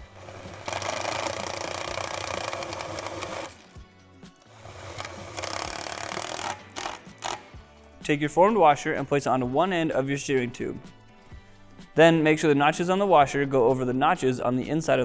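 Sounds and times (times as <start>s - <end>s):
power drill driving screws: 0.0s - 3.8s, 4.5s - 7.6s
background music: 0.0s - 15.0s.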